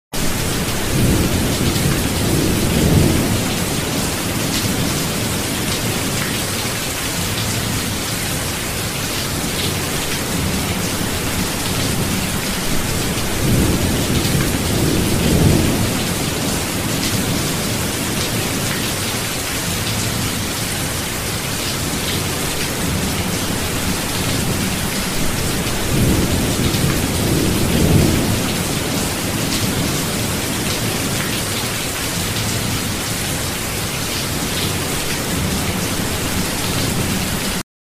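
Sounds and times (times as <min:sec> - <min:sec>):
rolling thunder: 0:00.2 - 0:06.2, 0:09.7 - 0:18.9, 0:21.8 - 0:31.4
heavy rain hissing: 0:00.2 - 0:37.6.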